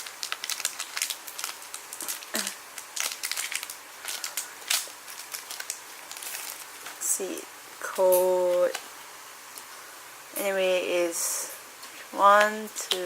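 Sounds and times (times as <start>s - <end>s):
foil wrapper crinkling: 0.0s - 7.0s.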